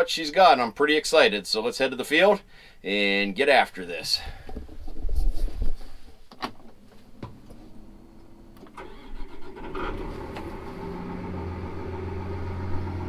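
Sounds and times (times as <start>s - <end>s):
diesel engine starting and idling: 7.6s - 13.0s.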